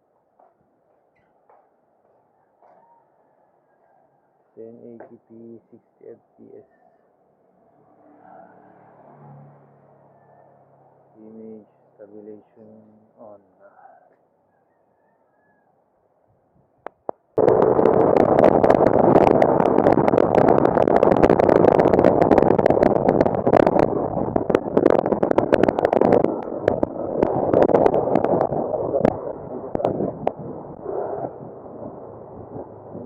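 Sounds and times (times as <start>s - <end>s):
wind buffeting microphone: 16.4s - 33.0s.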